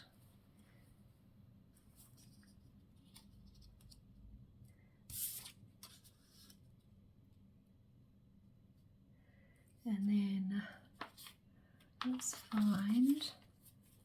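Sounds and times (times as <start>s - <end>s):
paper rustling: 11.0s - 11.4s, 12.0s - 14.0s.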